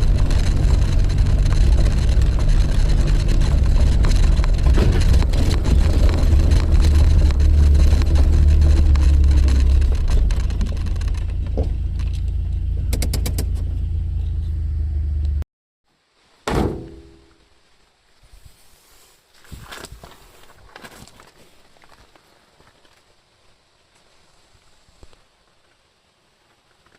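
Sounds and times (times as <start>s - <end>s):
car engine rumbling: 0.0s - 15.4s
single thump: 16.5s - 17.3s.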